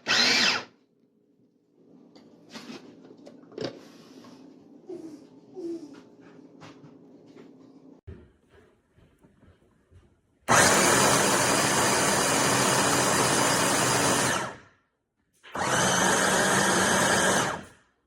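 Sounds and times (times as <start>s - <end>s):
electric food chopper running: 0.0s - 0.6s, 10.5s - 14.6s, 15.6s - 17.7s.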